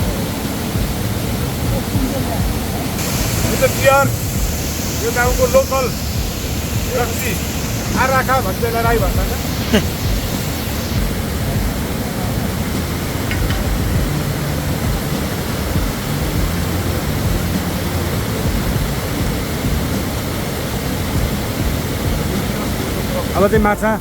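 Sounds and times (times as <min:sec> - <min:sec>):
river water rushing: 0:00.0 - 0:23.5.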